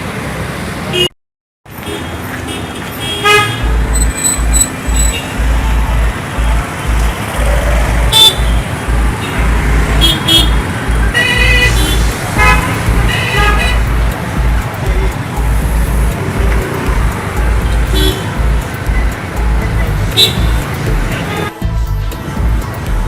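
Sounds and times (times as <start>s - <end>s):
street traffic: 0.0s - 23.0s
car horns tooting: 1.8s - 5.5s, 8.0s - 14.1s, 17.7s - 18.4s, 20.0s - 21.5s
deep rhythmic low thudding: 12.0s - 23.0s.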